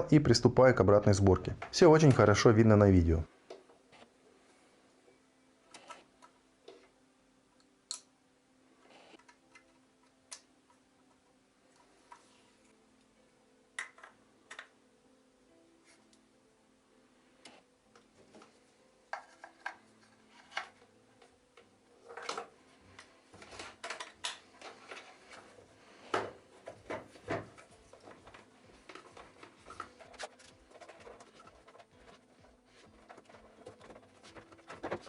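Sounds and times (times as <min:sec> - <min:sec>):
plastic parts clicking and scraping: 0:18.0 - 0:35.0.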